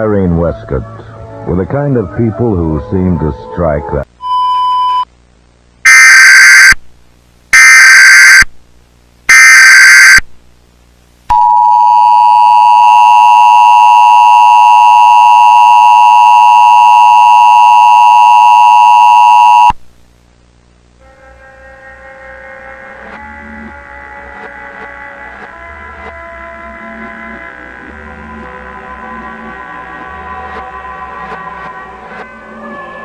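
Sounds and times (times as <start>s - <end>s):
short steady beep: 11.3s - 19.8s.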